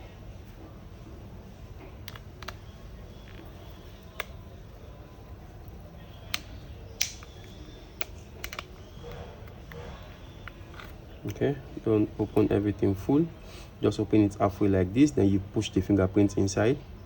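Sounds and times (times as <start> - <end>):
low steady hum: 0.0 - 17.0
plastic clips snapping: 2.0 - 2.6, 3.2 - 4.4, 6.2 - 11.4.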